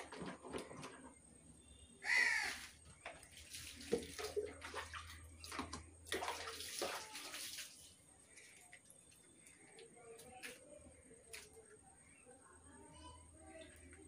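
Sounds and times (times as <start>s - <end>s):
water pouring over hair: 2.5s - 8.4s.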